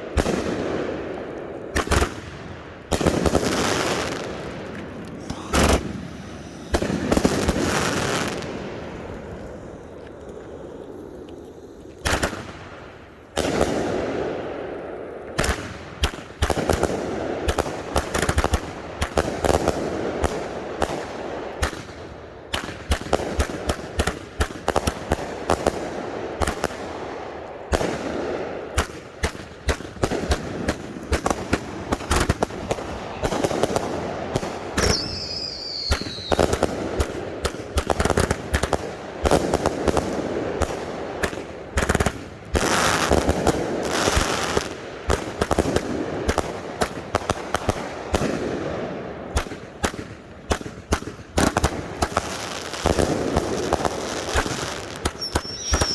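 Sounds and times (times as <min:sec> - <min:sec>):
firework bangs: 0:00.0 - 0:10.0, 0:12.0 - 0:55.9
firework hissing and crackle: 0:03.0 - 0:12.9, 0:29.0 - 0:40.4, 0:49.4 - 0:55.9.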